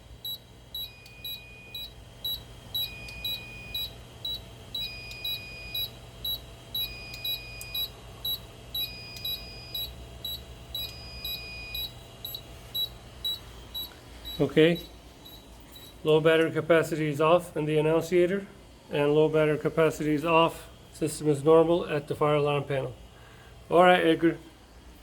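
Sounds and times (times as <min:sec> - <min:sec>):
alarm sounder beeping: 0:00.2 - 0:16.0.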